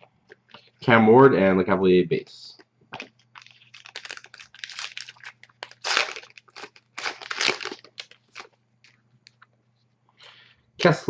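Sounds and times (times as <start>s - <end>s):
faint steady hum: 0.0s - 11.0s
trading cards and wrapping rustling: 3.0s - 9.4s.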